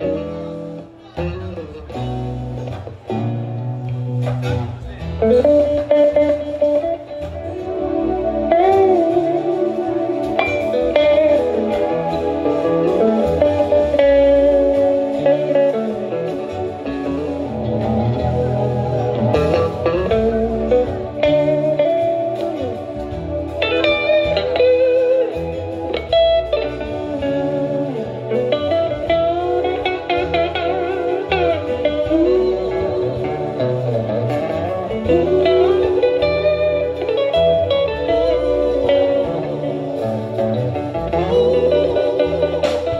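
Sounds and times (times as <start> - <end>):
bass line: 0.0 - 42.9
guitar bending notes: 0.0 - 42.9.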